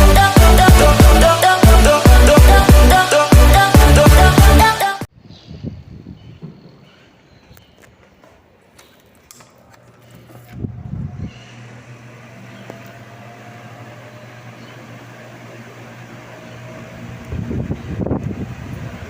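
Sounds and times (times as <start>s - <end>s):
wall fan motor hum: 9.6s - 19.0s.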